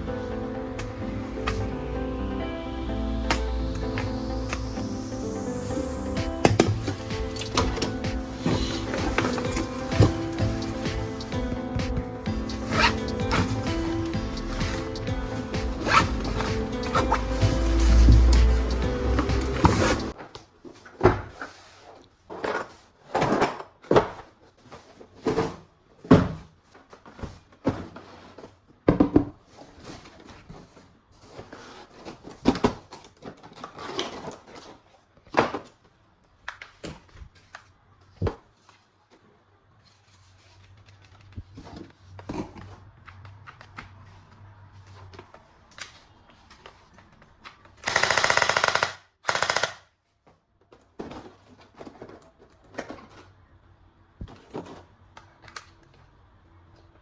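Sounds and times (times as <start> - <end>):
toy gun clicks and knocks: 47.8 - 49.9
toy gun rapid rattling burst: 47.8 - 49.9.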